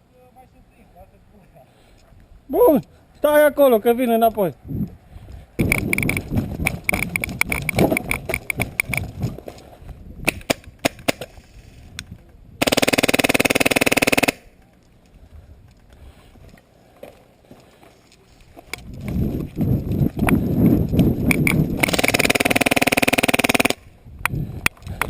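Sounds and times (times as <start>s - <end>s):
scattered clicks: 5.6s - 9.3s, 20.1s - 25.0s
airsoft gun full-auto burst: 12.6s - 14.5s, 21.8s - 23.8s.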